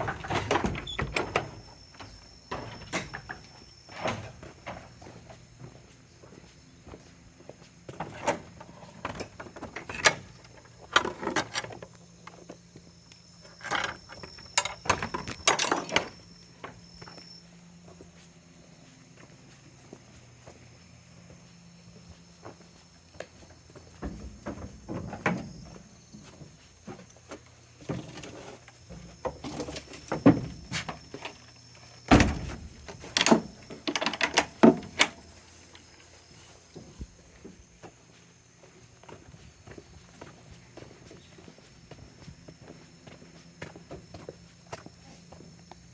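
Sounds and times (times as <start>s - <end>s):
goat hooves clattering on wood: 22.2s - 45.0s.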